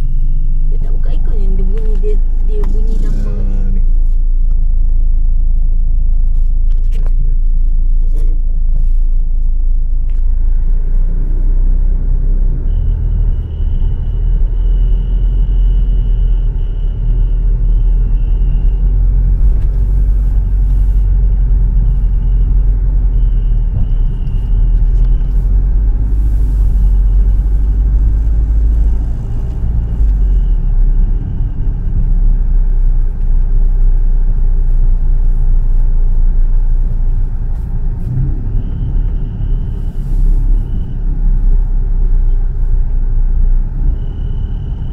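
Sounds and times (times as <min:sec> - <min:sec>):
car engine low rumble: 0:00.0 - 0:44.9
thin high-pitched whistle: 0:43.9 - 0:44.9.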